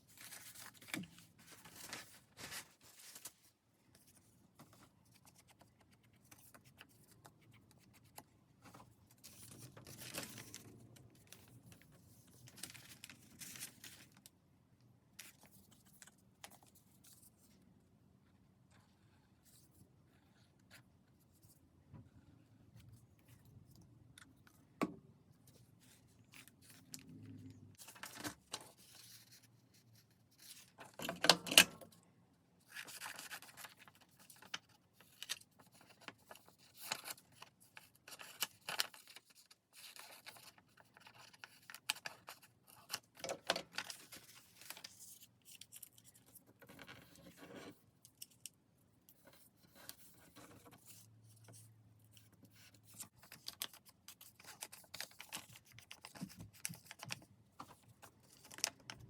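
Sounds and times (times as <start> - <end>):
paper rustling and scraping: 0.0 - 7.2, 7.8 - 14.2.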